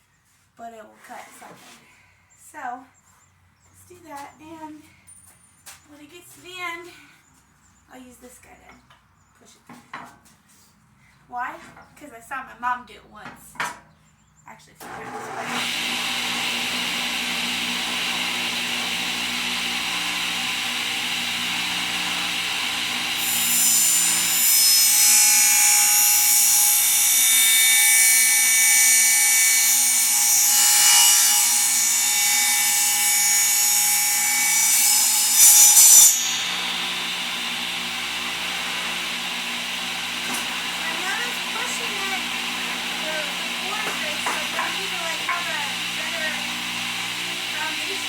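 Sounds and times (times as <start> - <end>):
saw blade cutting wood: 14.8 - 48.0
table saw running: 14.8 - 48.0.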